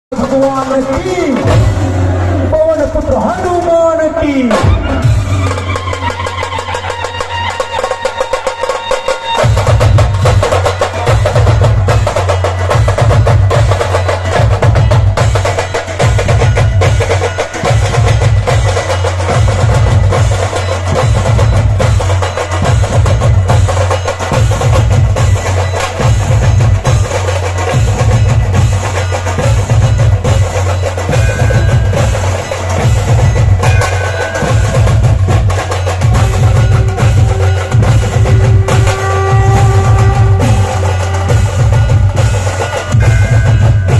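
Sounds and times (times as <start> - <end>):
deep drum beats: 0.1 - 43.9
rapid snare drum strokes: 0.1 - 43.9.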